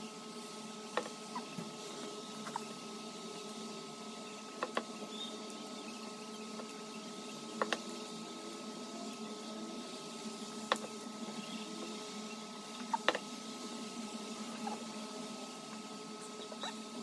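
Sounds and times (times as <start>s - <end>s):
room hum: 0.0s - 17.0s.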